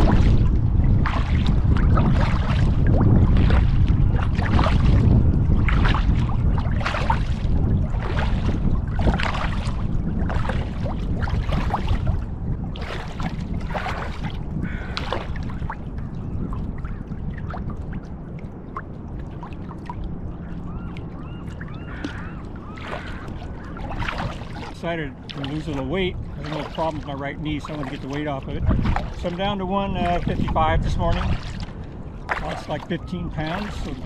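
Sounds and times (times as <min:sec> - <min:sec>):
paddle splashing in water: 0:00.0 - 0:34.0
wind rumbling on microphone: 0:00.0 - 0:34.0.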